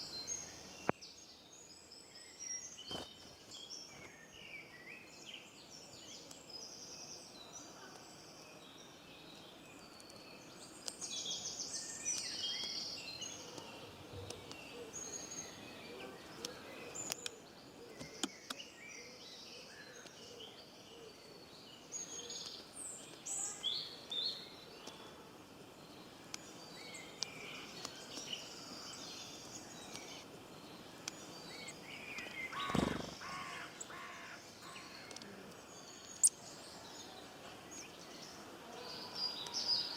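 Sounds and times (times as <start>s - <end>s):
songbirds chirping and trilling: 0.0s - 39.9s
lower bird call: 32.2s - 35.3s.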